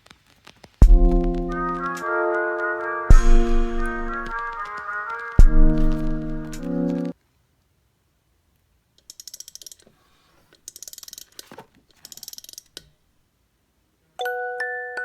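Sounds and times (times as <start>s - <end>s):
ratcheting clicks: 9.0s - 9.9s, 10.6s - 12.9s.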